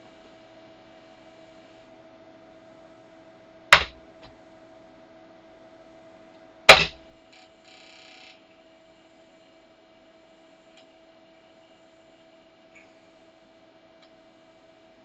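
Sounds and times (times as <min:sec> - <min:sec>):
low electrical hum: 0:00.0 - 0:15.0
sharp loud knocks: 0:03.8 - 0:04.0, 0:06.7 - 0:07.0.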